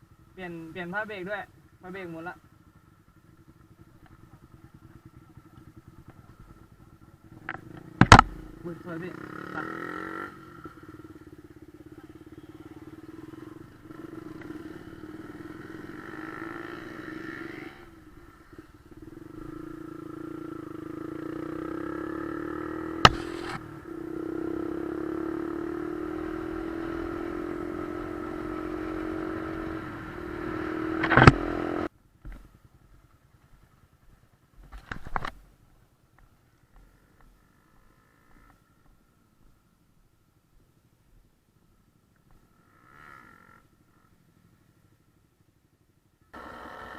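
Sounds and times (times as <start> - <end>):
motorcycle engine running: 0.0 - 46.9
sharp click: 23.0 - 23.6, 31.0 - 31.4.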